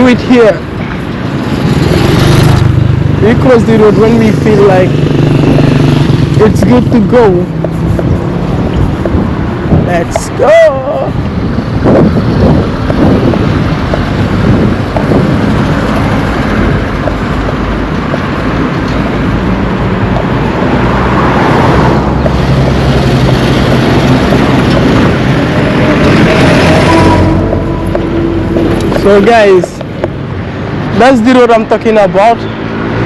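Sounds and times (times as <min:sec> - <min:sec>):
wind buffeting microphone: 0:00.0 - 0:31.0
vehicles driving past: 0:00.0 - 0:33.0.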